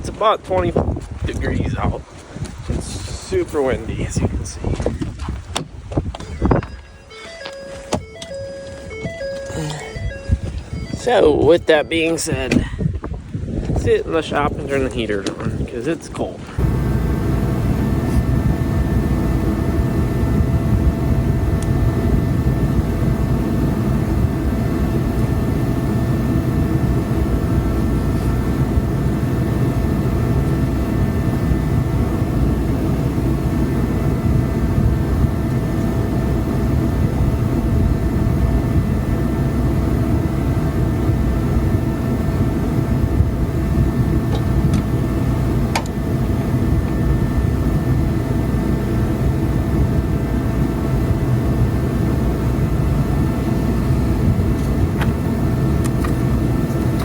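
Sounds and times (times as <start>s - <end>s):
heater air and burner rushing: 0.0s - 5.0s, 16.4s - 57.0s
fan whining tones: 6.1s - 12.8s, 16.5s - 57.0s.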